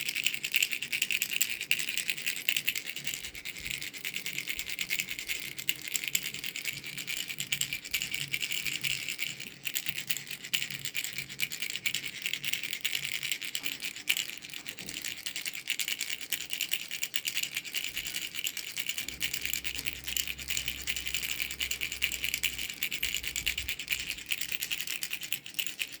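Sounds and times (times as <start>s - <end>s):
baby rattle shaken: 0.0s - 26.0s.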